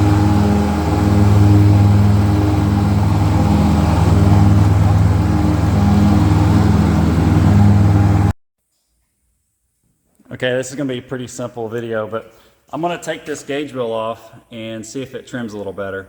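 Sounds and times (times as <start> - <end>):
mower diesel engine running: 0.0 - 8.3.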